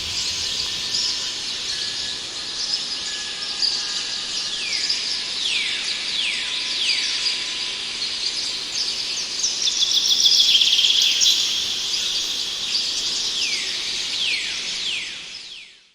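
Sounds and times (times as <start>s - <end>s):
steady high hiss: 0.0s - 3.2s, 8.4s - 15.3s.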